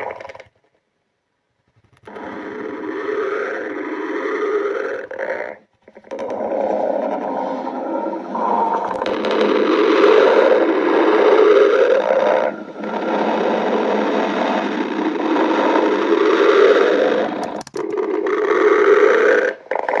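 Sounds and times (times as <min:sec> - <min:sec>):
stomach growling: 0:00.0 - 0:00.7, 0:01.9 - 0:20.0.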